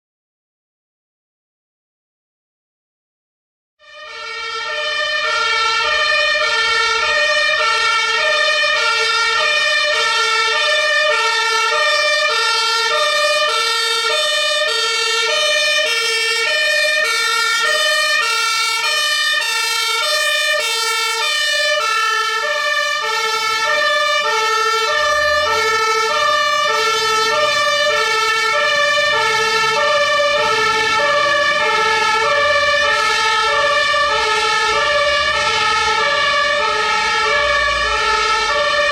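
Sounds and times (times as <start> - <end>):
two-tone siren: 3.8 - 38.9
vehicle engine accelerating: 23.4 - 38.9.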